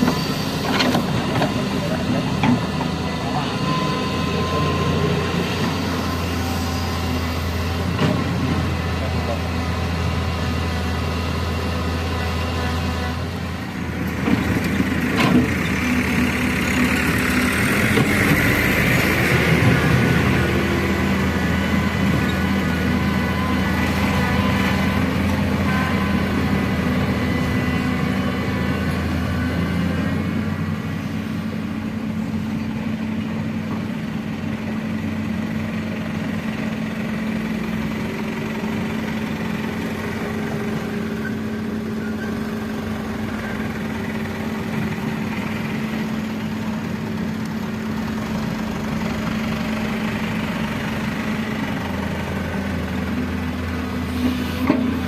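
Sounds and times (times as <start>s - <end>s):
diesel engine running: 0.0s - 55.0s.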